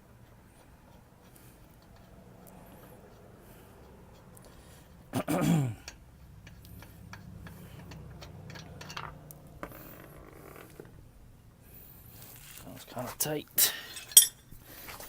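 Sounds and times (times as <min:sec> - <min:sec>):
light metal clicks: 0:05.8 - 0:09.8.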